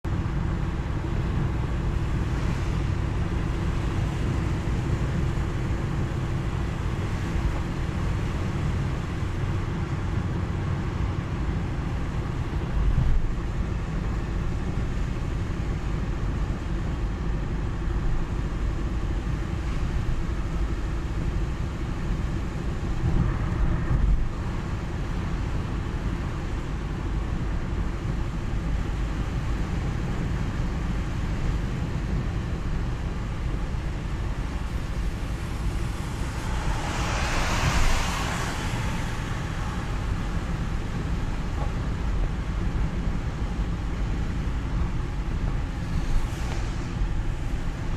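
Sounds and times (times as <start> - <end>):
car engine and road rumble: 0.0 - 47.9
tyres hissing on wet pavement: 32.6 - 43.1, 45.4 - 47.9.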